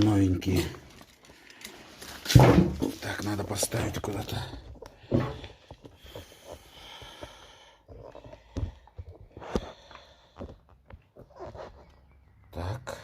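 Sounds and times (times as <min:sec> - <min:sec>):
parts knocking when set down: 0:02.2 - 0:03.0.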